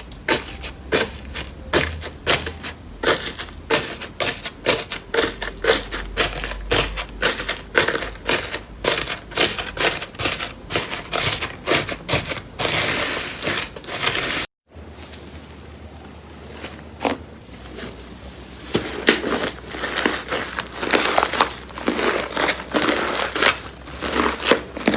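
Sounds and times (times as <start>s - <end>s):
slime clicking and crackling: 19.0s - 24.9s.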